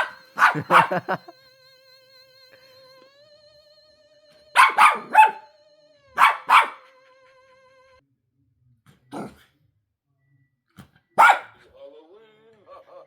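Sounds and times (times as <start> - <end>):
dog barking: 0.0 - 1.2, 4.6 - 5.5, 6.2 - 6.9, 11.2 - 11.6
faint wavering electronic tone: 1.0 - 6.2.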